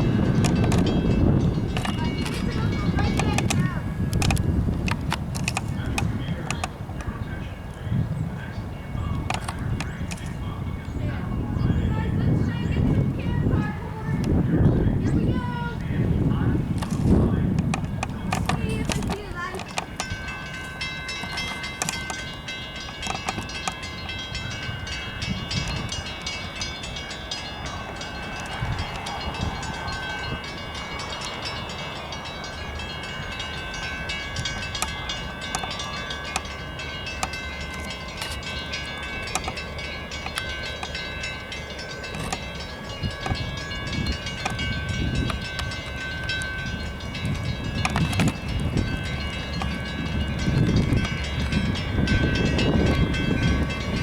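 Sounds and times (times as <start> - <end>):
wheels clicking over rails: 0.0 - 7.4, 9.0 - 11.0, 11.9 - 54.0
train rumbling past: 0.0 - 54.0
high-pitched ringing: 18.6 - 54.0.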